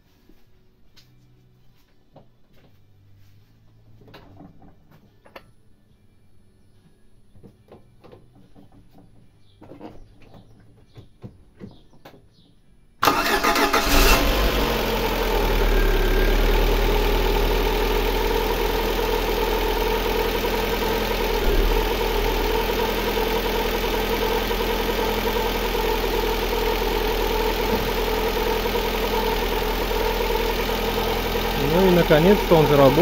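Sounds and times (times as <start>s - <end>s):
car engine idling: 13.0s - 33.0s.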